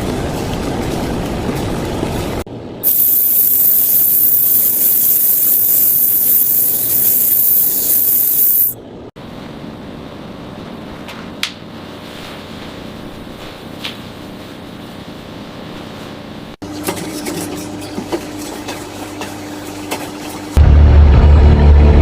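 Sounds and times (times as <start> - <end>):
compressed air hissing: 2.8 - 8.8.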